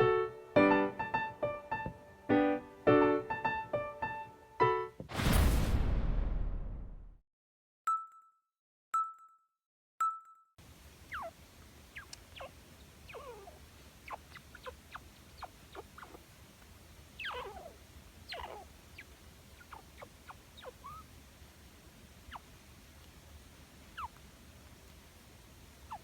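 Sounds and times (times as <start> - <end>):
chinchilla squeaking: 11.1 - 16.3, 17.2 - 21.1, 22.3 - 22.5, 24.0 - 24.2.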